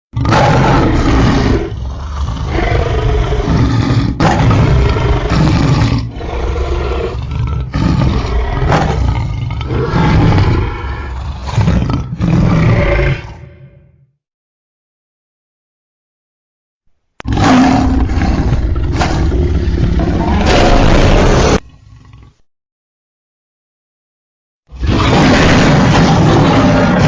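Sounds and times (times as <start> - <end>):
deep dinosaur roars: 0.1 - 14.0, 17.2 - 22.4, 24.7 - 27.0.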